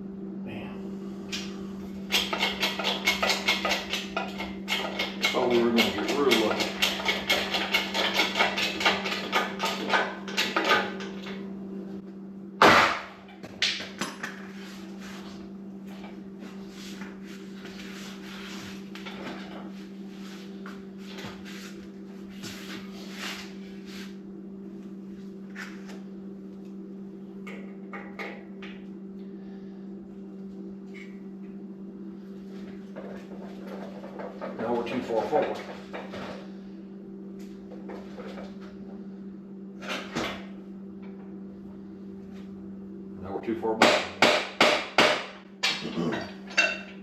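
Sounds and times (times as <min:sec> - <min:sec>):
steady low hum: 0:00.0 - 0:47.0
loud hammer knock: 0:43.8 - 0:45.4.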